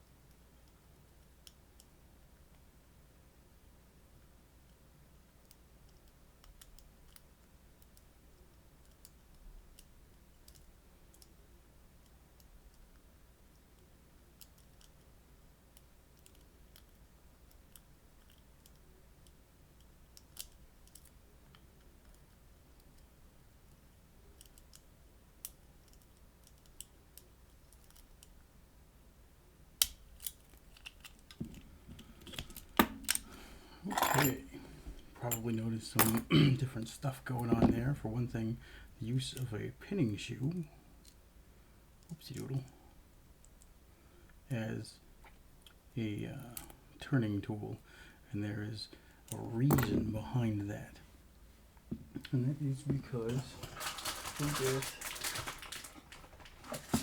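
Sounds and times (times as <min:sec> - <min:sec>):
lock pick metallic clicks: 0:29.8 - 0:33.3.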